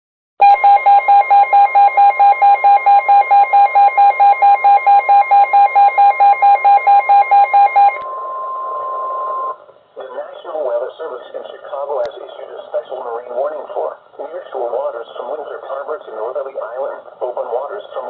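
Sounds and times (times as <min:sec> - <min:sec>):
steady alarm tone: 0:00.4 - 0:09.6.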